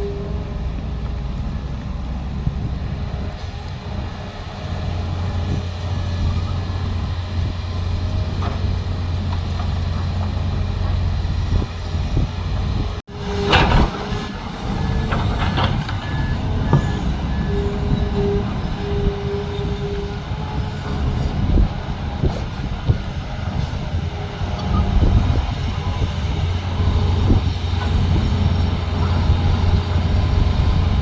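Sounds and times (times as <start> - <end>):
heavy machinery engines running: 0.0 - 31.0
reversing alarm beeping: 13.2 - 21.2.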